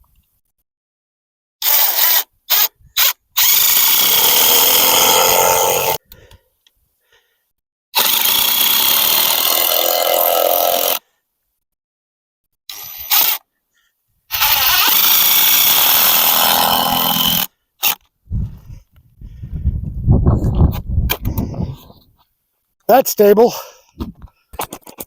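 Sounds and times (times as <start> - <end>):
power tool running: 3.4 - 6.0, 14.3 - 17.5.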